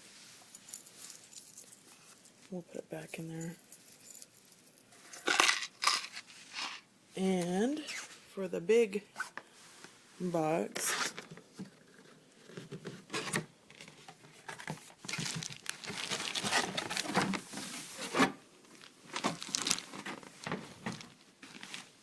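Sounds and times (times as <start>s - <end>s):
packaging rustling and crinkling: 12.7s - 22.0s.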